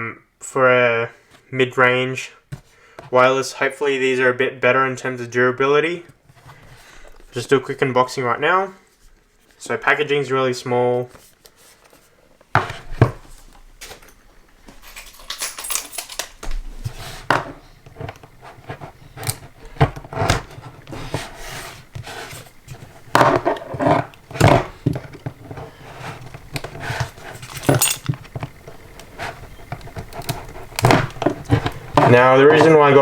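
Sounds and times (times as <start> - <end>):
packaging rustling: 15.2 - 33.0.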